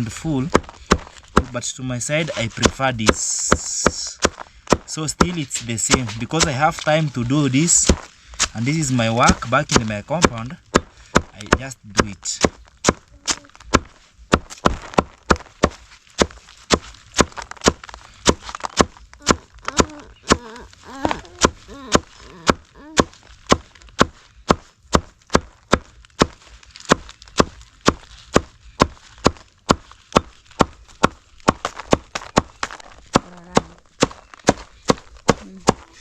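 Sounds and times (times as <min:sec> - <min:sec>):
knife chopping leaves: 0:00.0 - 0:36.0.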